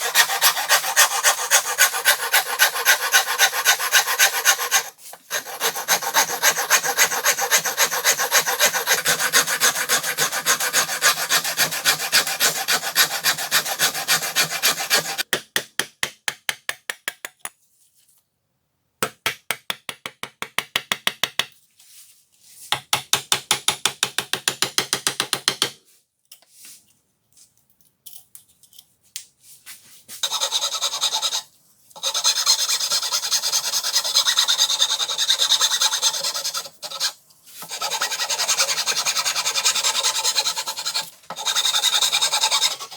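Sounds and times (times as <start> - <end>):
hand file scraping: 0.0 - 15.3, 30.2 - 42.9.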